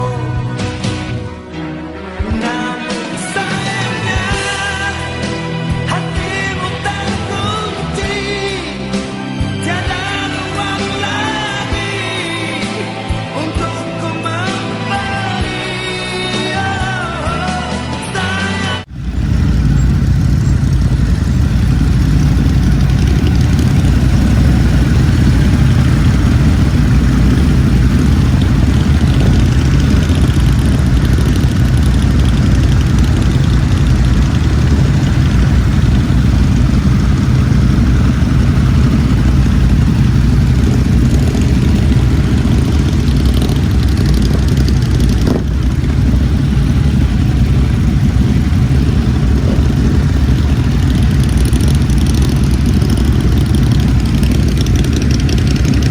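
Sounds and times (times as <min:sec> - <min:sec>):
motorcycle engine running: 0:18.9 - 0:55.9.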